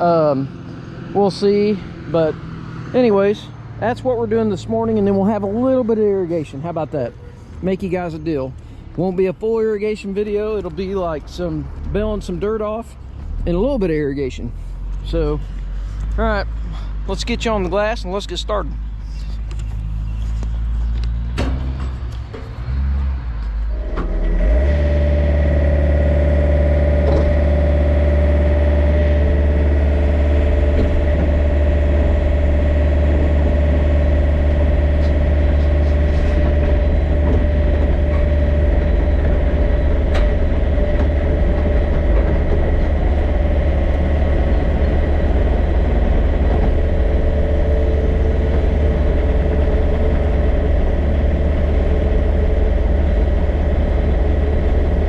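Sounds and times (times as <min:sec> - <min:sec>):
excavator diesel engine: 0:00.0 - 0:55.0
high whine: 0:23.4 - 0:55.0.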